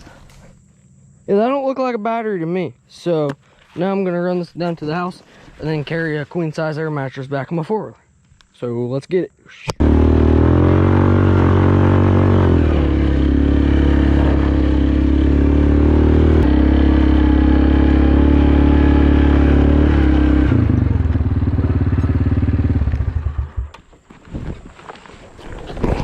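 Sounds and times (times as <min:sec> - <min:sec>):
atv engine running: 0:09.8 - 0:23.8.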